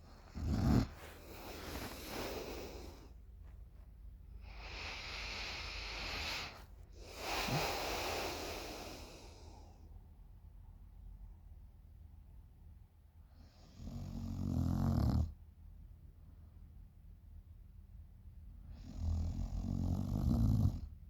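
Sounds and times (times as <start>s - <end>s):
girl snoring: 0.3s - 3.0s, 4.6s - 9.4s, 19.0s - 20.9s
hissing breaths: 0.3s - 3.2s, 4.4s - 9.8s.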